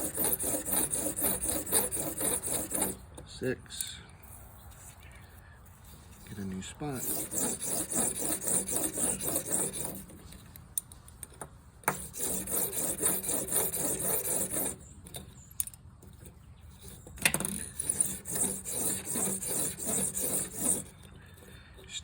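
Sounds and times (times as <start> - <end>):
blade rasping on abrasive: 0.0 - 3.1, 6.2 - 10.4, 11.9 - 15.3, 16.7 - 21.6.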